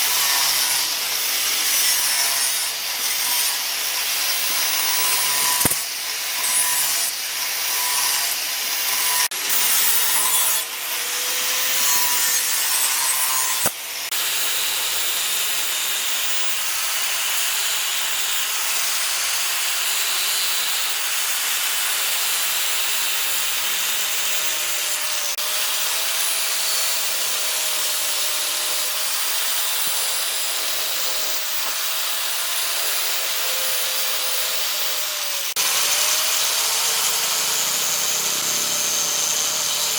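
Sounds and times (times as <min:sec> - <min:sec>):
power tool working wood: 0:00.0 - 0:39.9.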